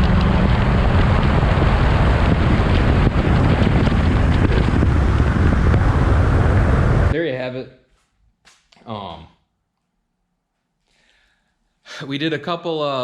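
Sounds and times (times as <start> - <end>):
truck engine running: 0.0 - 7.1
wind buffeting microphone: 0.0 - 7.2.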